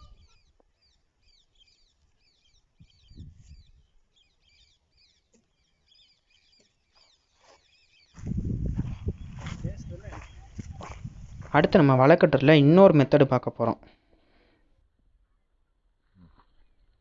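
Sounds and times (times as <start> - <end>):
small birds chirping: 0.0 - 11.9.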